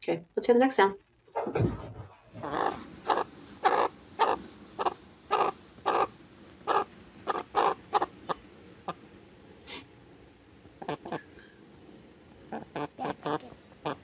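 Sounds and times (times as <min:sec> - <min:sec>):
chickens clucking: 0:02.4 - 0:09.9, 0:10.7 - 0:11.5, 0:12.4 - 0:14.0.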